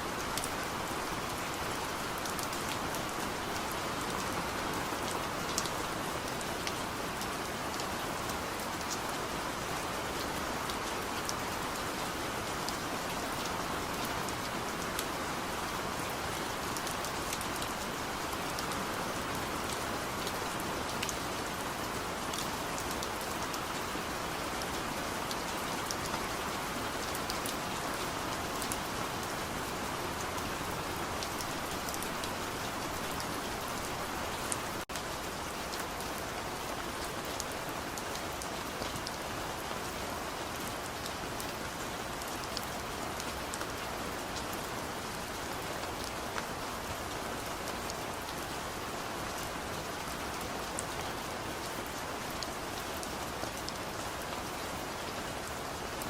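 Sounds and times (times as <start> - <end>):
steady rain hiss: 0.0 - 56.0.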